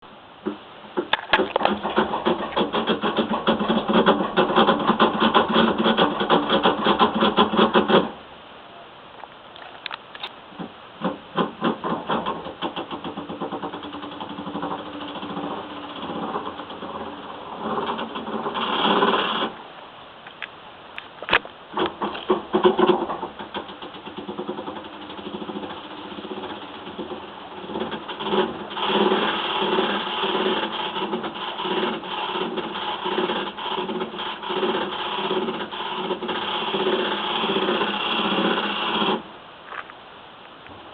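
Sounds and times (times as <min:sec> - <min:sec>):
low washing machine hum: 0:00.0 - 0:08.2, 0:10.4 - 0:19.8, 0:21.6 - 0:39.4
washing machine rattling knock: 0:01.0 - 0:08.1, 0:21.8 - 0:28.5.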